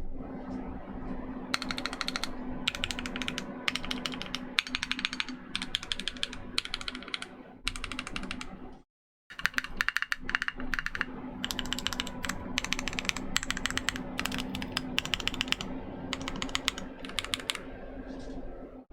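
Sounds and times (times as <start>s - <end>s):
fast mechanical keyboard typing: 1.5s - 8.6s, 9.3s - 17.7s.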